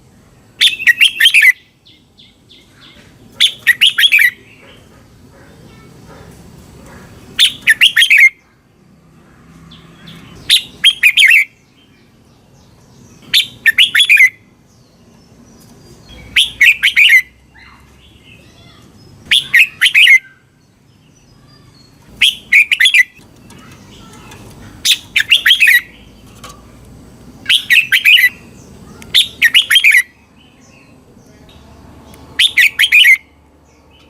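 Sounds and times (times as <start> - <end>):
bird singing whistled notes: 0.6 - 2.6, 3.4 - 4.4, 7.4 - 8.4, 10.3 - 12.0, 13.2 - 14.5, 16.0 - 18.5, 19.2 - 20.6, 21.4 - 23.2, 24.8 - 26.1, 27.4 - 30.9, 32.3 - 33.3.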